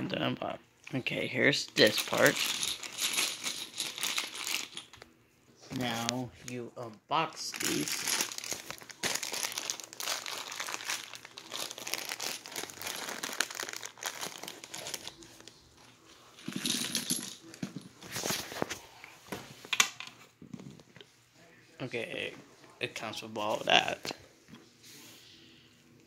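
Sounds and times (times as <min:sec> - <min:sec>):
packaging crinkling: 0:01.8 - 0:05.1, 0:07.3 - 0:15.6.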